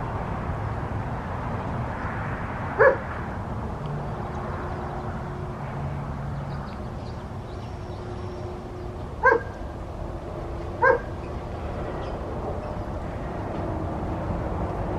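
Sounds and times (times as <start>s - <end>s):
outdoor background noise: 0.0s - 14.9s
dog barking: 2.8s - 3.1s, 9.2s - 9.6s, 10.8s - 11.1s.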